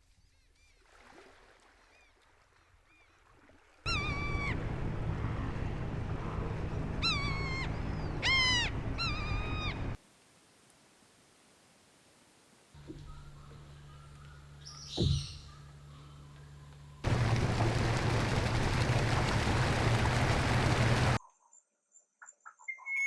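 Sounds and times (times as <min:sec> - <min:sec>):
ringing bird calls: 0:03.9 - 0:05.4, 0:06.3 - 0:10.0
faint arched calls: 0:03.9 - 0:10.0, 0:17.1 - 0:21.2
dense hiss and low hum: 0:17.0 - 0:21.2.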